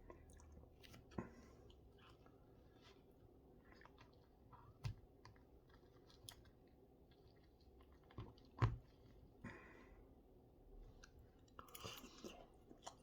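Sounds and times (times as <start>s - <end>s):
person chewing with mouth clicks: 11.0s - 13.0s.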